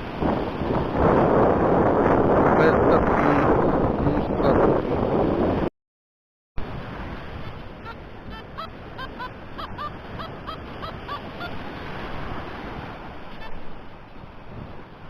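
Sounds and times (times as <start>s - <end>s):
wind buffeting microphone: 0.0s - 5.7s, 6.6s - 15.0s
surf: 6.6s - 15.0s.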